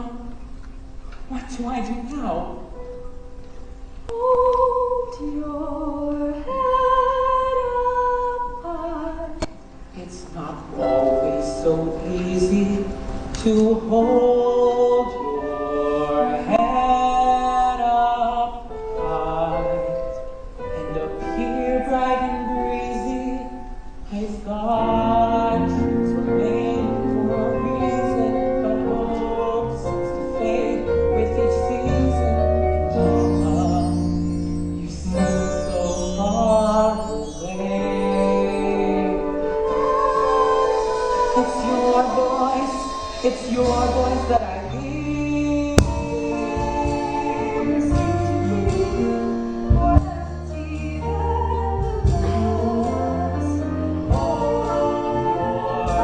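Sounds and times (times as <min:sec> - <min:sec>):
voices singing in harmony: 0:10.8 - 0:56.0
instrumental accompaniment: 0:24.7 - 0:56.0.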